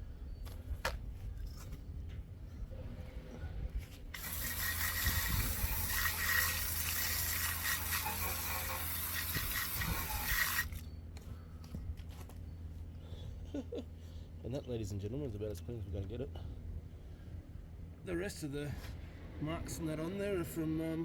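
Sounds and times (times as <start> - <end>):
low steady hum: 0.0 - 21.0
water spraying on car wheel: 4.2 - 10.8.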